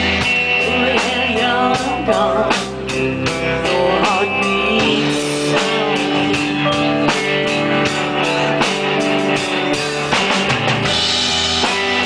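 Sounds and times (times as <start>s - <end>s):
drum kit steady beat: 0.0s - 12.0s
rock band playing slow song: 0.0s - 12.0s
person singing: 0.4s - 7.2s.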